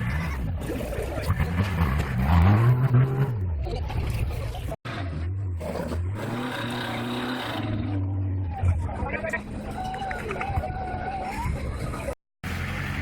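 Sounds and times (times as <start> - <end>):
off-road vehicle engine revving: 0.0 - 9.8, 12.4 - 13.0.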